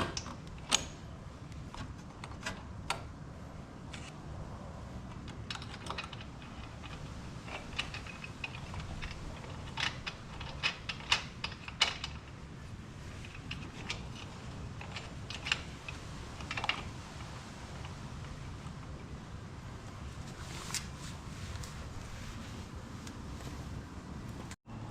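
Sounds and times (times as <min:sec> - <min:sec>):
metal parts clicking and tapping: 0:00.0 - 0:03.1, 0:05.1 - 0:12.4, 0:13.2 - 0:19.0
steady low hum: 0:00.0 - 0:24.9.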